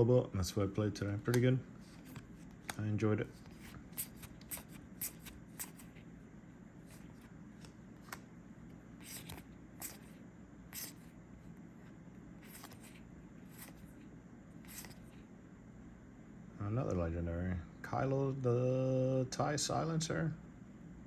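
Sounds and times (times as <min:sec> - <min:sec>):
trading cards sliding and flicking: 0:01.2 - 0:06.1, 0:06.8 - 0:11.2, 0:11.8 - 0:14.0, 0:14.6 - 0:15.2.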